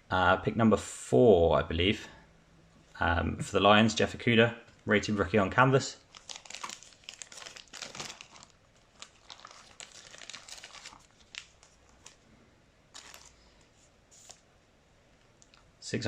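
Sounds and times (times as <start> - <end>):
foil wrapper crinkling and tearing: 6.0 - 12.2, 12.9 - 13.4, 14.1 - 14.4.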